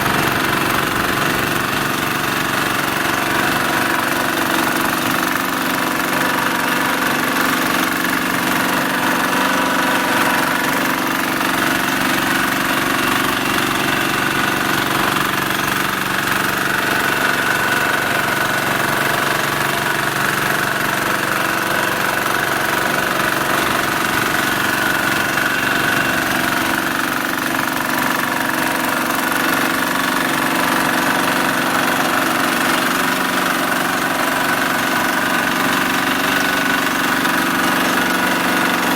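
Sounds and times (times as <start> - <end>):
road roller engine running: 0.0 - 38.9.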